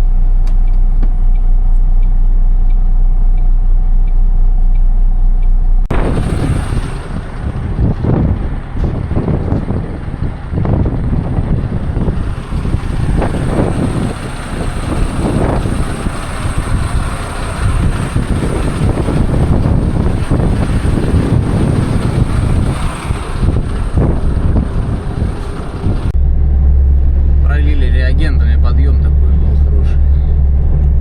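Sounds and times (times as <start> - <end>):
road and wind noise rumble: 0.0 - 31.0
truck engine running: 0.0 - 31.0.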